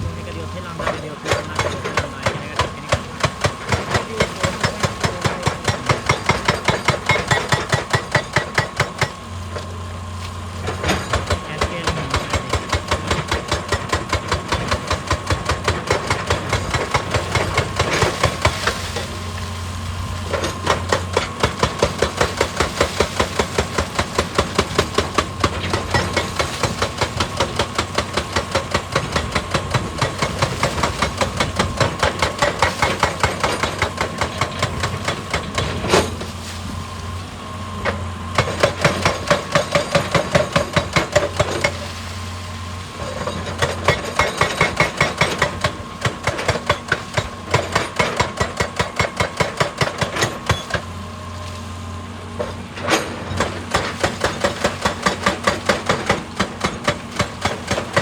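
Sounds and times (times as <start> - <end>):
excavator engine running: 0.0 - 58.0
hydraulic breaker hammering rock: 0.0 - 58.0.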